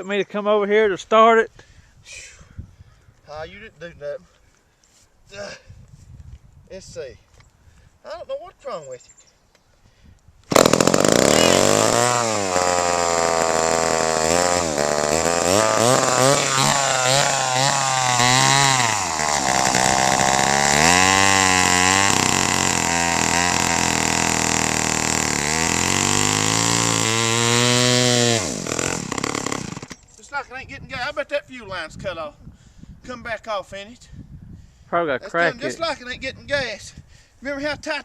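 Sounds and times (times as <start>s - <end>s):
chainsaw running unevenly: 10.5s - 30.0s.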